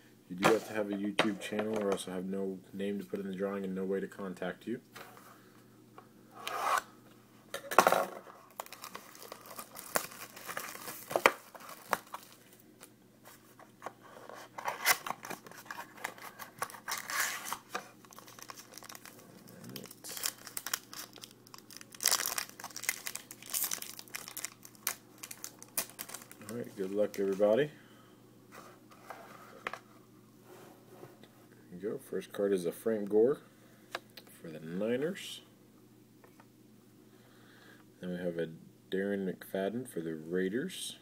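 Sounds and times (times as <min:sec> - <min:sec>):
card packaging tearing and crinkling: 0:08.5 - 0:12.6, 0:14.4 - 0:27.4.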